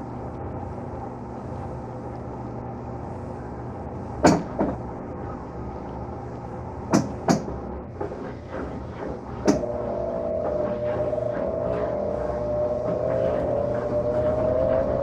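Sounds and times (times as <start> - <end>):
washing machine motor hum: 0.0 - 15.0
washing machine clunks: 4.2 - 4.8, 6.9 - 7.6, 9.5 - 9.7.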